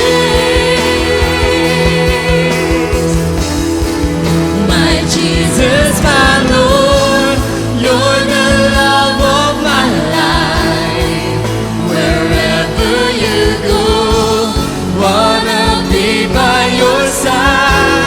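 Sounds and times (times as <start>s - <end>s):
band accompaniment: 2.0s - 16.2s
singers holding long notes: 4.3s - 18.0s.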